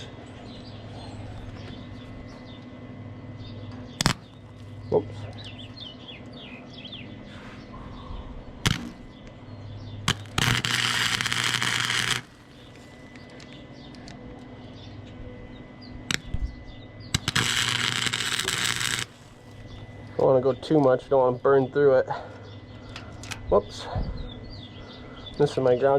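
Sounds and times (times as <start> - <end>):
low welder hum: 0.0 - 25.9
welding arc crackling sizzle: 3.9 - 5.8, 8.6 - 9.4, 10.0 - 14.5, 16.0 - 21.9
sharp arc pops: 4.0 - 4.7, 8.6 - 9.2, 10.1 - 14.0, 16.1 - 16.5, 17.1 - 19.3.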